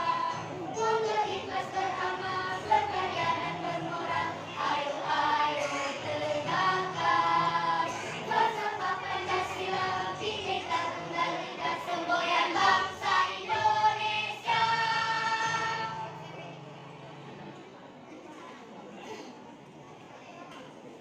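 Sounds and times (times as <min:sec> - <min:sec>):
choir singing in parts: 0:00.0 - 0:16.2.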